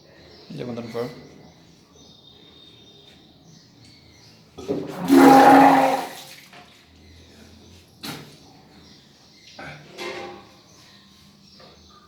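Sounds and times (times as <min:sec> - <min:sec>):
person retching and vomiting: 0:04.7 - 0:06.2.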